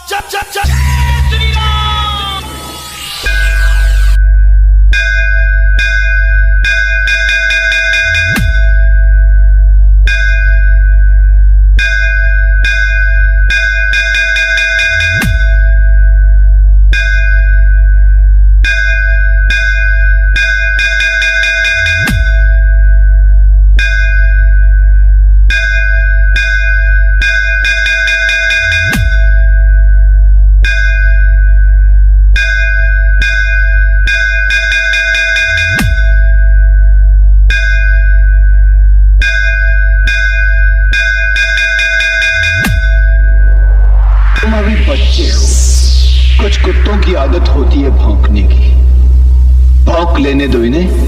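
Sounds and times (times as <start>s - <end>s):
heavy bass: 0.0s - 51.0s
bass pitch sweep: 0.6s - 7.1s, 8.0s - 20.6s, 42.2s - 51.0s.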